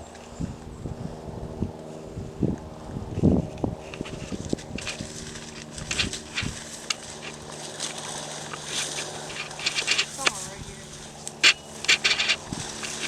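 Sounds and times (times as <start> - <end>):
low background hum: 0.0 - 13.0
footsteps rustling through dry brush: 3.0 - 13.0.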